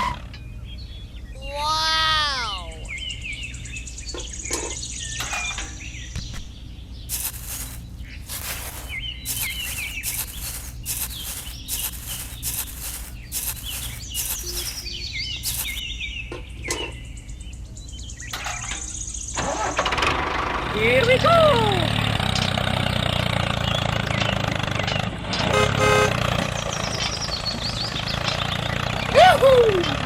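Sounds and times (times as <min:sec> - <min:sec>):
birds chirping: 0:02.4 - 0:18.3.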